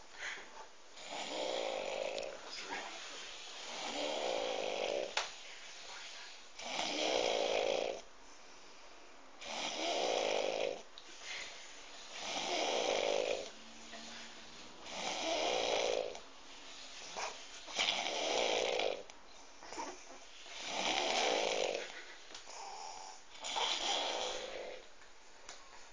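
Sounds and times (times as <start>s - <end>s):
person snoring: 1.0s - 2.4s, 3.7s - 5.2s, 6.6s - 8.0s, 9.4s - 10.8s, 12.2s - 13.6s, 14.8s - 16.2s, 17.8s - 19.1s, 20.6s - 24.9s.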